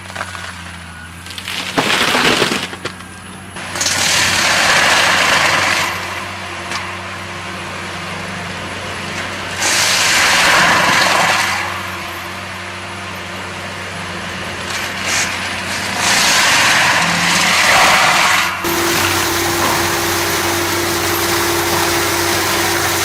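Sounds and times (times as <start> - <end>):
wood cracking and splintering: 0.0 - 6.8, 9.6 - 11.8, 14.6 - 23.0
diesel machine running: 2.6 - 23.0.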